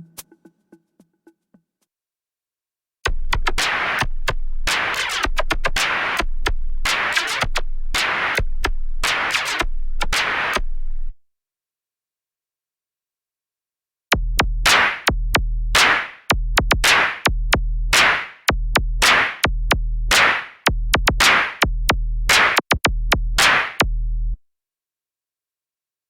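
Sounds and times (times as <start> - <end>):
electronic drum-machine beat: 14.1 - 24.4
deep held bass notes: 14.2 - 24.4.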